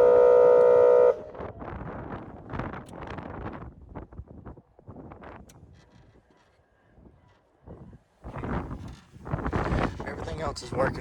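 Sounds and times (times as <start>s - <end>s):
wind rumbling on microphone: 7.7s - 11.0s.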